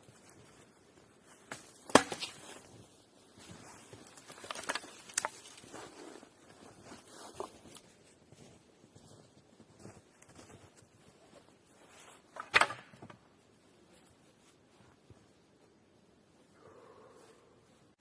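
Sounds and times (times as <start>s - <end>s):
sharp cracks and knocks: 1.5s - 2.5s, 4.0s - 5.6s, 12.4s - 13.2s.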